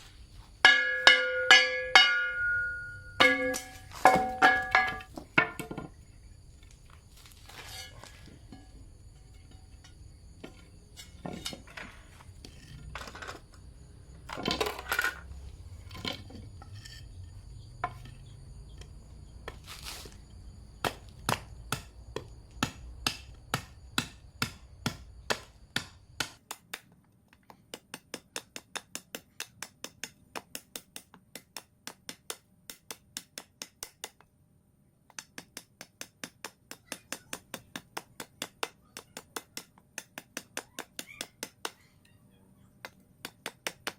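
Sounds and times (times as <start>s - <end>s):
hammer tapping on metal: 0.6s - 5.7s
scattered knocks: 0.7s - 6.0s.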